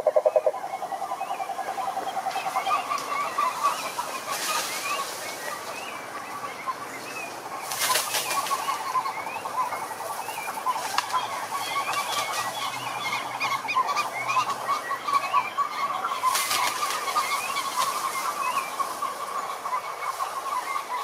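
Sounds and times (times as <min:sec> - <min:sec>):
frogs calling: 0:00.0 - 0:07.6.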